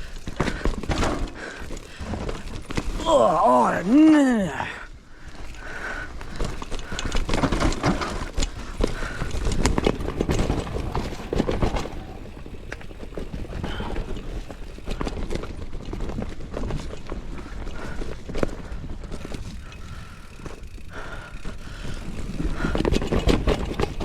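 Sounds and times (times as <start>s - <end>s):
tyres rumbling on dirt: 0.0s - 18.0s
bike rattling and clattering: 0.0s - 24.0s.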